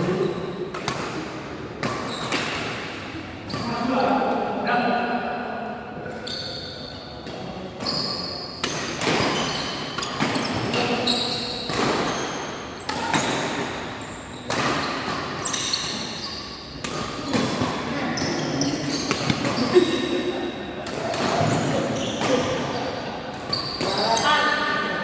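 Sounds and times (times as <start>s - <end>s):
shoes squeaking on court floor: 1.8s - 2.7s, 3.4s - 4.1s, 6.1s - 25.0s
rackets hitting shuttlecock: 8.6s - 17.9s, 18.6s - 20.1s.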